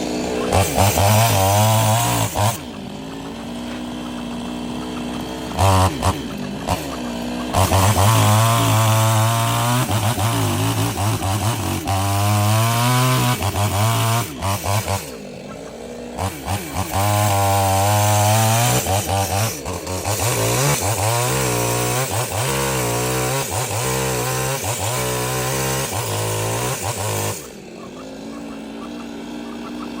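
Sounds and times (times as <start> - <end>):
chainsaw cutting wood: 0.0 - 30.0.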